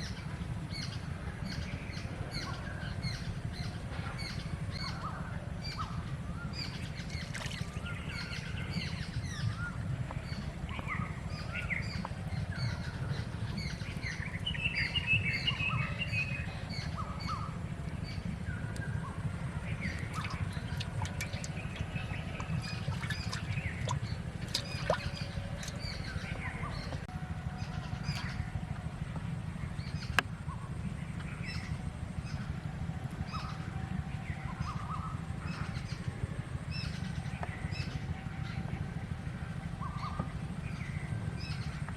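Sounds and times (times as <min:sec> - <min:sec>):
steady low rumble: 0:00.0 - 0:41.9
small birds chirping: 0:00.8 - 0:28.5.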